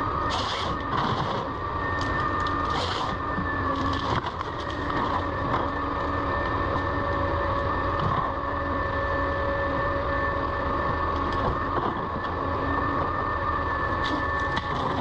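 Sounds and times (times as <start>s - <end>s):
harvester engine drone: 0.0s - 15.0s
high hydraulic whine: 0.0s - 15.0s.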